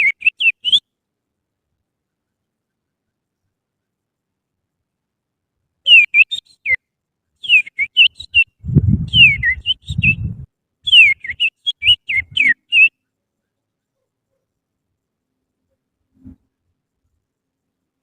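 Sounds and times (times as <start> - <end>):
person whistling birdsong: 0.0 - 0.9, 5.9 - 6.8, 7.4 - 12.9.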